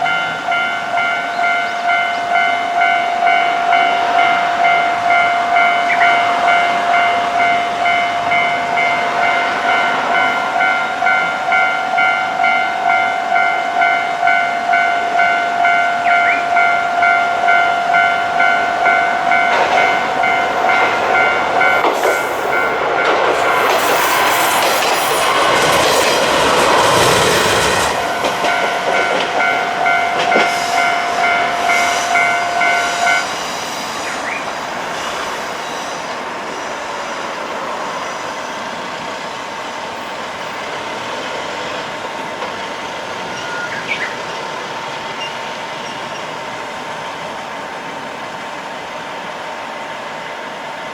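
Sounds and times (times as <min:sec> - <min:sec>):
level crossing bell ringing: 0:00.0 - 0:23.8, 0:28.0 - 0:33.4
diesel railcar passing: 0:00.0 - 0:50.9.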